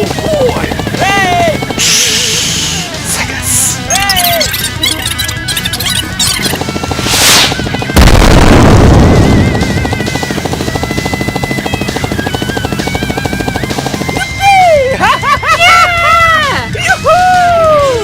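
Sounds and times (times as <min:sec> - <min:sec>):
loud boom sound effect: 0:07.1 - 0:09.4
music with fast pulsing beat: 0:09.0 - 0:15.1.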